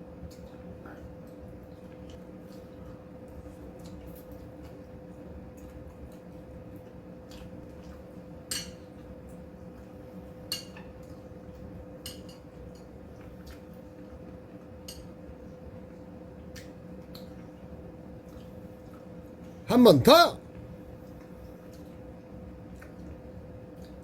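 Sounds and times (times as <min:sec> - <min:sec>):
cutlery clinking against dishes: 0:08.5 - 0:08.8, 0:12.0 - 0:12.5.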